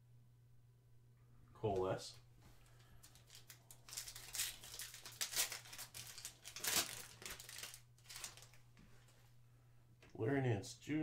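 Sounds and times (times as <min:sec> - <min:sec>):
wrapper crinkling: 0:02.8 - 0:09.2
wrapper ripping: 0:03.0 - 0:08.7.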